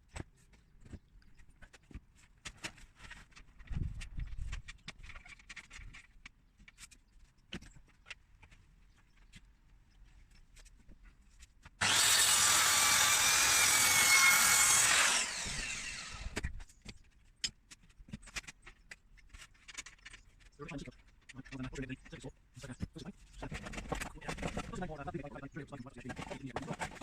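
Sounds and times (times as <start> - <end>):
saw blade spinning down: 11.8 - 16.4
power saw cutting timber: 11.8 - 16.5.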